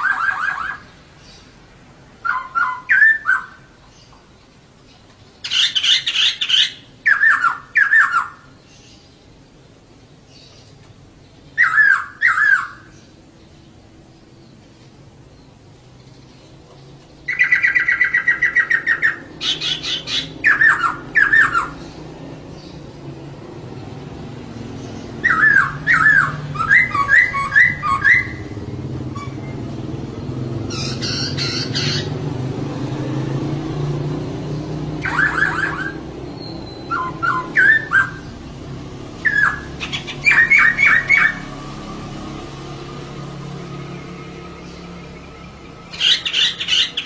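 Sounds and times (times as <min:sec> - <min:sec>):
bird calling in bursts: 0:00.0 - 0:04.3, 0:05.3 - 0:09.1, 0:11.5 - 0:13.4, 0:17.2 - 0:23.1, 0:24.7 - 0:32.4, 0:34.9 - 0:41.6, 0:44.5 - 0:47.0.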